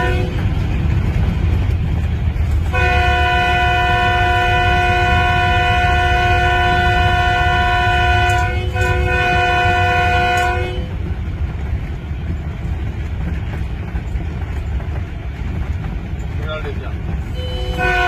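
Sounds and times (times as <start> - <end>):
train horn chord: 0.0 - 0.4, 2.7 - 10.9, 17.3 - 18.0
train running rumble: 0.0 - 18.0.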